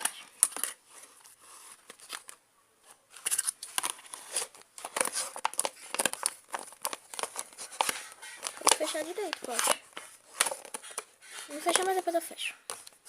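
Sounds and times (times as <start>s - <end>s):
plastic lid clicking and crackling: 3.2s - 12.0s.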